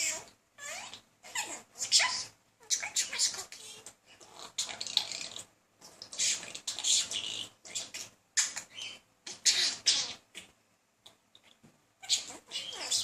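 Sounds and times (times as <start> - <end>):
budgerigar chattering: 12.0 - 13.0.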